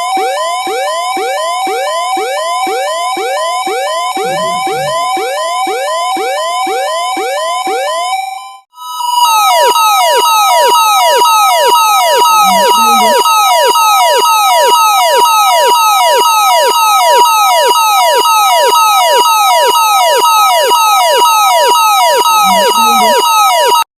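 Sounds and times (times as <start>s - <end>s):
two-tone emergency alert alarm: 0.0s - 23.9s
quick falling sweeps: 4.2s - 5.1s.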